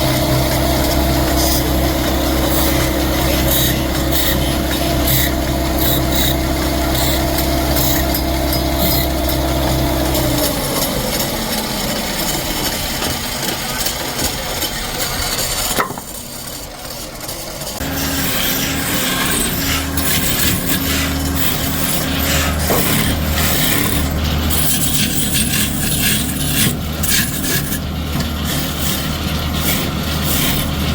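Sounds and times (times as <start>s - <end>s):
machine hum winding down: 0.0s - 15.0s, 17.7s - 30.9s
rubbing and scraping on wood: 17.7s - 30.9s.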